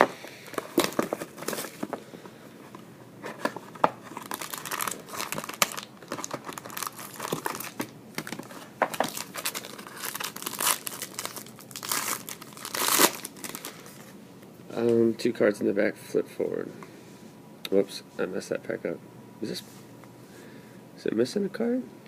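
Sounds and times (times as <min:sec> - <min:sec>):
plastic wrapping crinkling and tearing: 0:00.4 - 0:02.0, 0:03.4 - 0:14.0.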